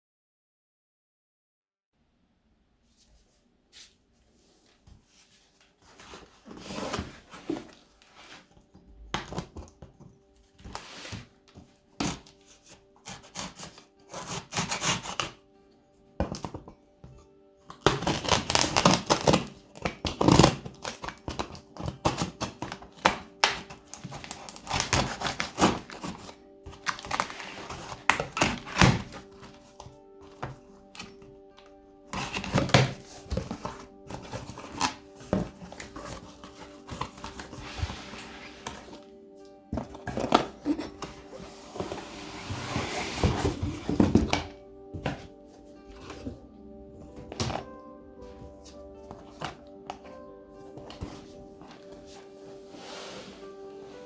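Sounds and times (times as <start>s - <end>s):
cardboard box rustling and tearing: 5.9s - 9.8s, 12.0s - 15.4s, 17.8s - 31.2s, 32.1s - 39.0s, 39.8s - 45.3s, 46.0s - 46.5s
box thunks: 17.9s - 31.2s, 32.1s - 39.0s, 39.8s - 45.3s.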